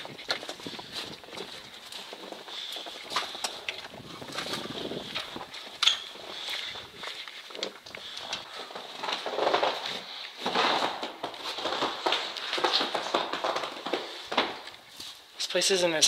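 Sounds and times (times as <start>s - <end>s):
footsteps scuffing on floor: 10.8s - 15.3s.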